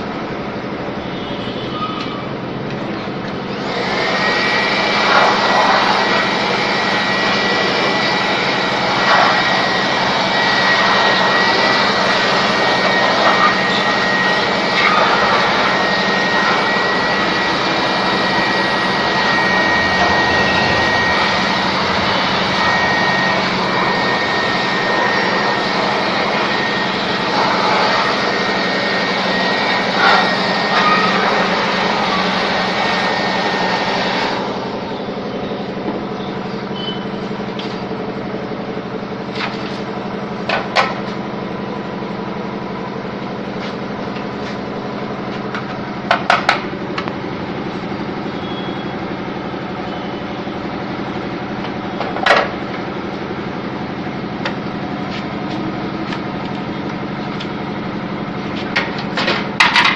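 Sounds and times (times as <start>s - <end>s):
loud rushing hiss: 14.4s - 34.6s
small electric motor humming: 15.7s - 32.3s.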